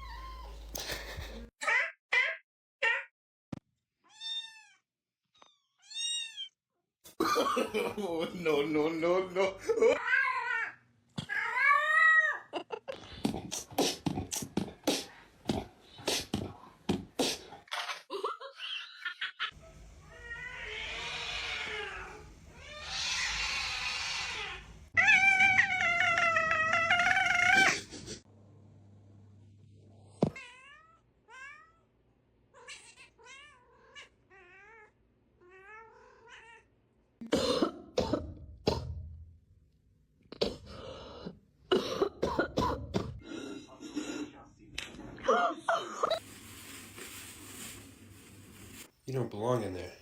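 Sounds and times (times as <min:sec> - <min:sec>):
cat yowling: 0:20.1 - 0:27.8
cat hissing: 0:20.1 - 0:28.2.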